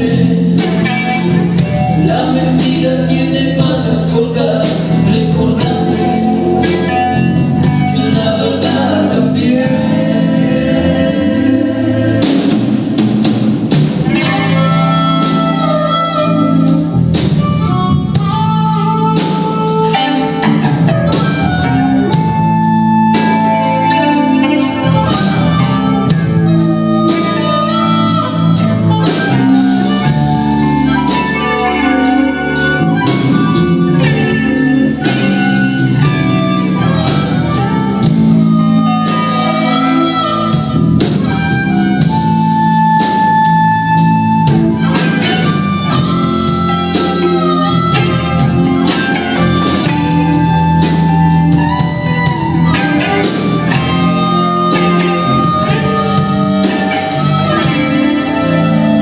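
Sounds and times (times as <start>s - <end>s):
bass: 0.0s - 59.0s
electric guitar lines: 0.0s - 59.0s
steady drum beat: 0.0s - 59.0s.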